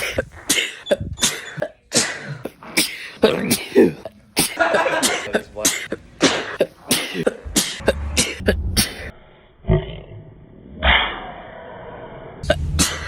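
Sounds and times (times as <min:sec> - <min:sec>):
man sneezing: 0:00.0 - 0:09.1.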